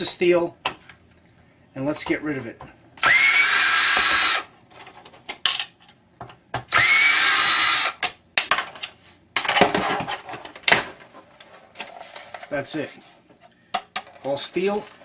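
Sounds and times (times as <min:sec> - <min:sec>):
power drill whining: 0:03.0 - 0:04.5, 0:06.7 - 0:08.0.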